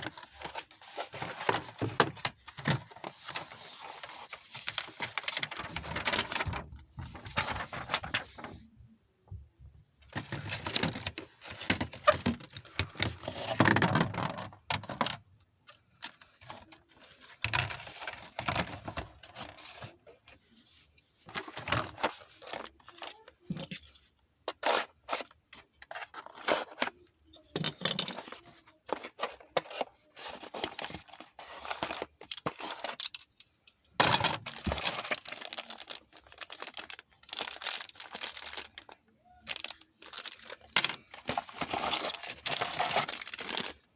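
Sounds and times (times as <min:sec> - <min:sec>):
packaging tearing and crinkling: 0:34.4 - 0:43.9.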